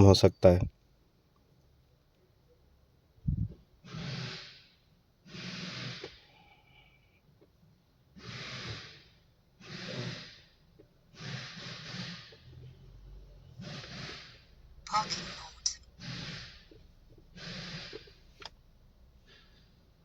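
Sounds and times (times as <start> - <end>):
person breathing: 5.4 - 7.2.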